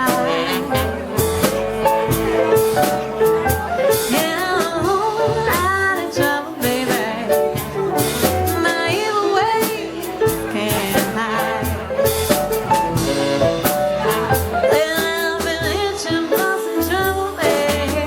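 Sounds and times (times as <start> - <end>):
drum hits: 0.0 - 5.0, 10.2 - 15.8
band playing a song: 0.0 - 18.0
lead voice singing: 0.0 - 18.0.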